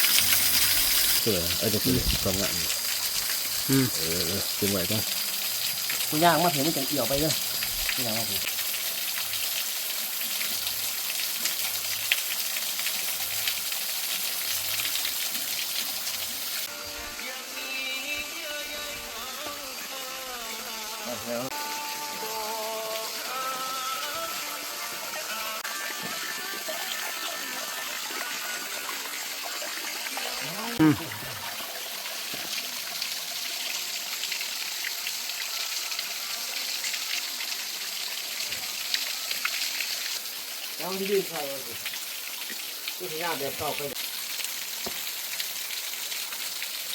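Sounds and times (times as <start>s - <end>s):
waterfall rushing and splashing: 0.0s - 9.5s, 12.8s - 44.0s
waterfall rushing: 16.2s - 32.8s.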